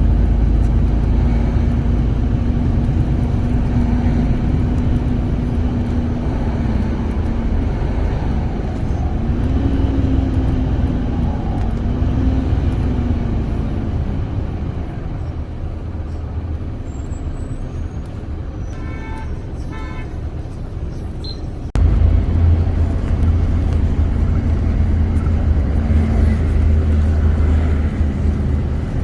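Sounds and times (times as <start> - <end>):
bus engine rumble: 0.0 - 29.0
humming engine tone: 21.2 - 29.0.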